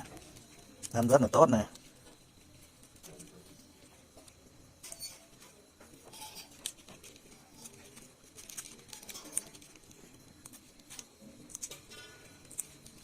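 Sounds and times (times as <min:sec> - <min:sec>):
leaves rustling and crackling: 0:06.6 - 0:11.0.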